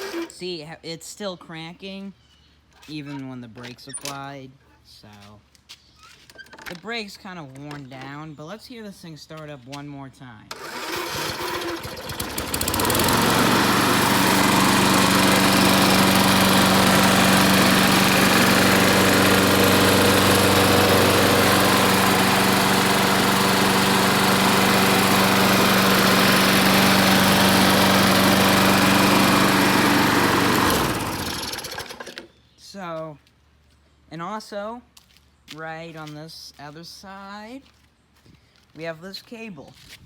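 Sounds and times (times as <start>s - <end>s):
mower engine cranking and running: 0.0s - 0.4s, 10.5s - 32.4s.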